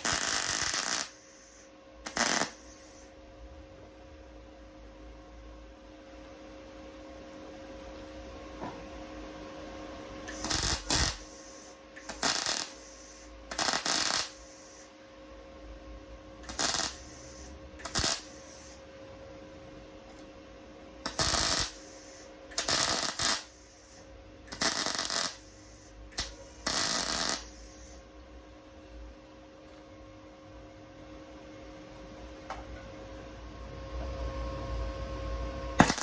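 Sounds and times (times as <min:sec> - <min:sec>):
welding arc crackling: 0:00.0 - 0:03.1, 0:10.3 - 0:14.9, 0:16.4 - 0:18.8, 0:21.0 - 0:28.0, 0:35.8 - 0:36.0
welder low hum: 0:00.0 - 0:05.8, 0:06.7 - 0:29.2, 0:31.2 - 0:36.0.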